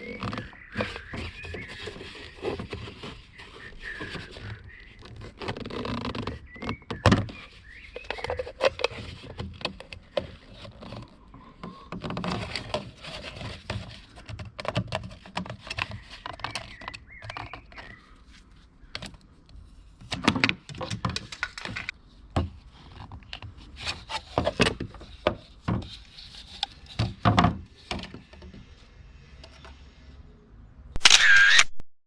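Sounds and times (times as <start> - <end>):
objects handled and set down: 20.0 - 28.6.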